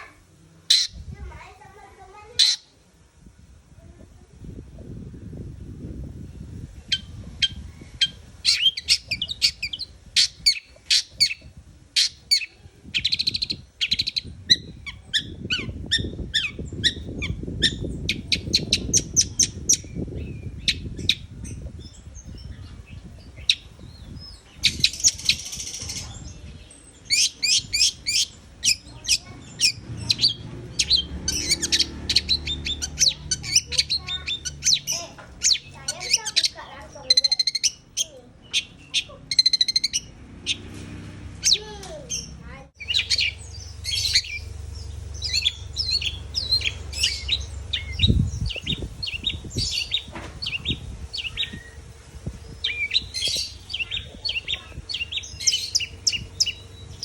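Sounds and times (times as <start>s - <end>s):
harsh rasping bird call: 0.0s - 1.0s, 2.2s - 2.7s, 27.1s - 40.7s, 41.4s - 51.8s
bird chirping: 0.0s - 2.8s, 5.3s - 57.0s
low background rumble: 0.0s - 57.0s.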